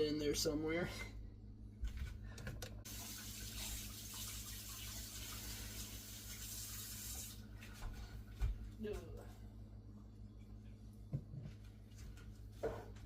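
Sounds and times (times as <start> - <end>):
tap water running into sink: 2.8 - 7.4.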